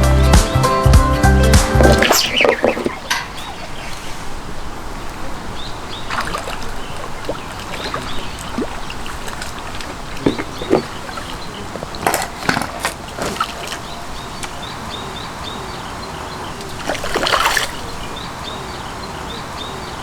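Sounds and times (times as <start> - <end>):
background music: 0.0 - 2.2
steady ambient hiss: 1.1 - 20.0.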